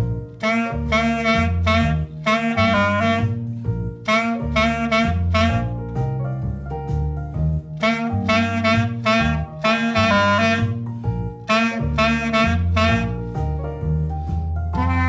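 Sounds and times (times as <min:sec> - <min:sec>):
bass line: 0:00.0 - 0:15.0
jazzy band music: 0:00.0 - 0:15.0
wind instruments punchy phrases: 0:00.3 - 0:06.1, 0:07.6 - 0:10.8, 0:11.4 - 0:13.6.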